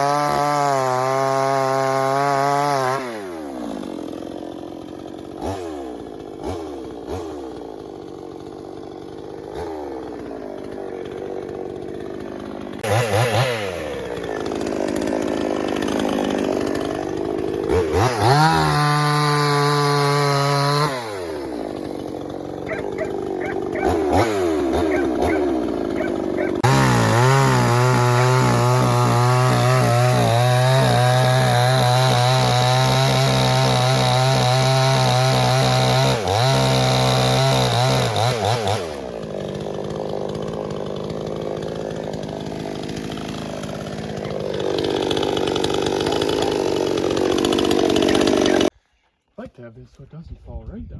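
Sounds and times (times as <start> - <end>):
chainsaw idling and revving: 0.0 - 48.8.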